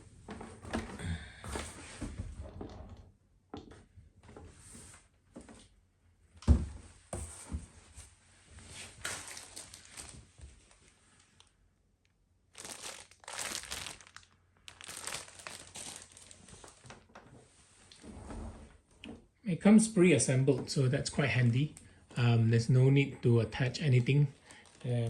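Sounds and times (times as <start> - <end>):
packaging crinkling and rustling: 8.8 - 11.5, 12.5 - 17.2, 23.8 - 25.0.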